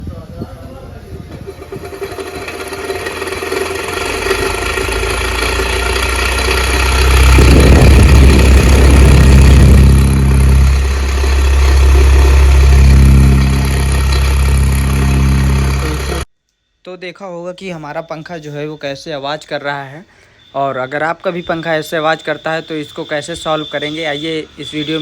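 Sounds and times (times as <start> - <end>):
fan grating hum: 0.0 - 16.3.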